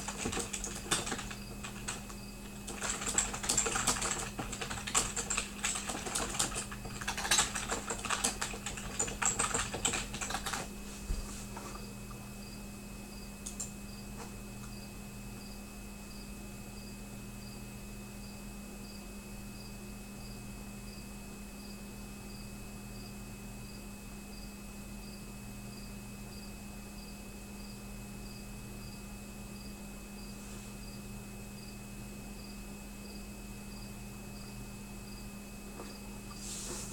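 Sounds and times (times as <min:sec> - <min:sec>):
low electrical hum and hiss: 0:00.0 - 0:36.9.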